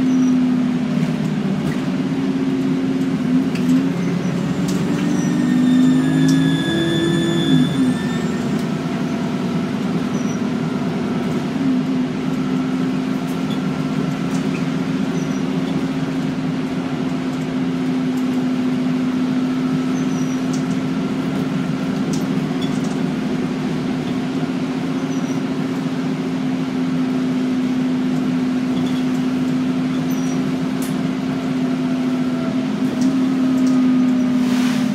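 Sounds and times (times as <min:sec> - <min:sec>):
bus engine droning: 0:00.0 - 0:34.9
turbocharger whistle: 0:04.0 - 0:08.8.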